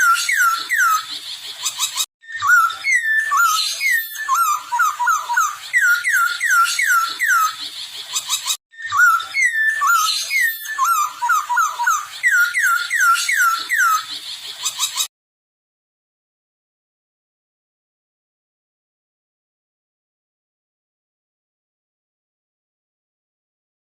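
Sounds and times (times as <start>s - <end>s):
bird singing whistles: 0.0s - 15.1s
higher bird twittering: 0.0s - 15.1s.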